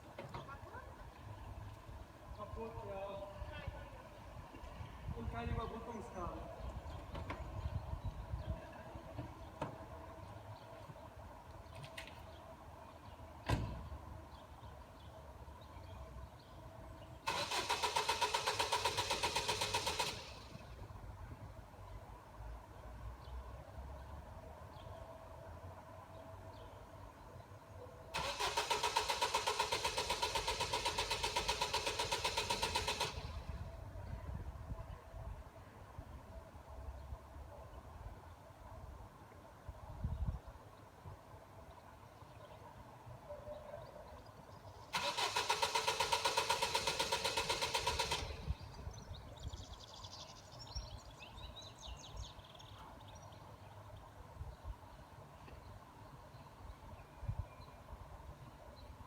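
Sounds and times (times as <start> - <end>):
car starter motor cranking: 17.3 - 20.8, 28.2 - 33.7, 45.0 - 48.8.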